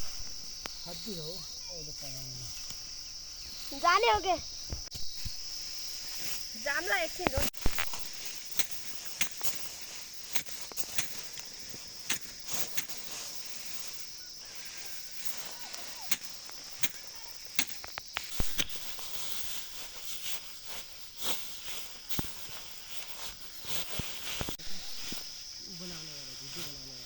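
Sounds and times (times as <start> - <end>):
rice stalks snapping and rustling: 0.0 - 27.0
steady high hiss: 0.0 - 27.0.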